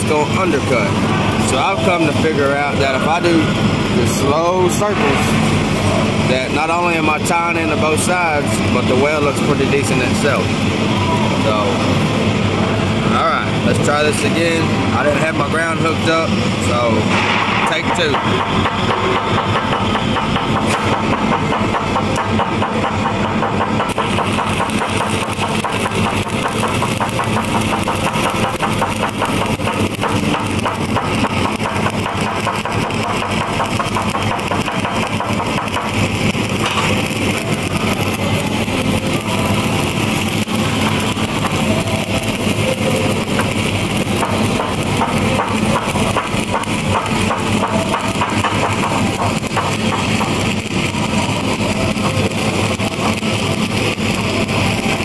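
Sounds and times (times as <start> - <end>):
welding arc crackling: 0.0 - 55.0
engine hum: 16.0 - 55.0.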